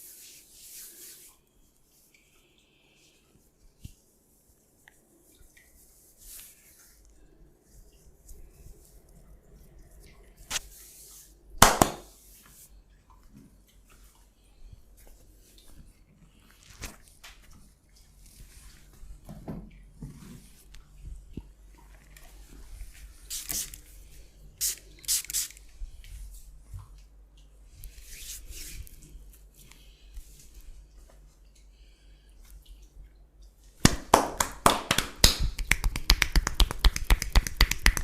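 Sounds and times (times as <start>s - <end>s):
hands rubbing skin: 3.8s - 7.1s, 22.9s - 23.9s, 33.8s - 38.0s
sharp smack on skin: 11.6s - 12.1s.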